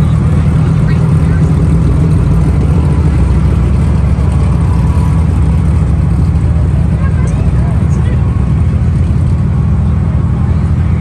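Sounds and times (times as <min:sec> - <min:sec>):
vehicle engine rumbling: 0:00.0 - 0:11.0.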